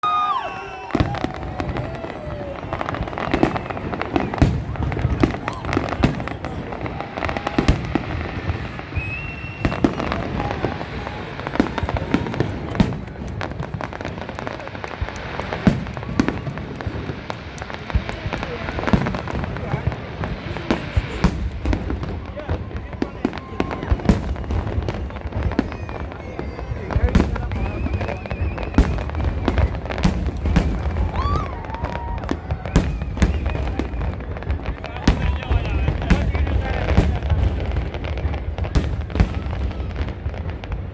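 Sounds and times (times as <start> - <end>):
fireworks bangs and crackles: 0.0 - 40.9
wavering whistle-like tone: 24.9 - 34.2.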